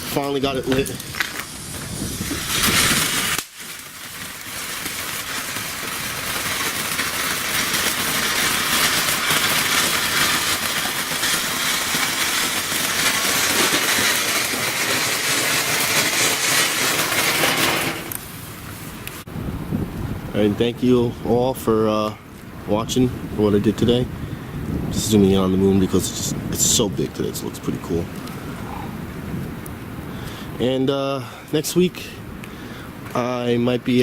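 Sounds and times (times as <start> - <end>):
ground firework hissing: 0.0 - 19.3.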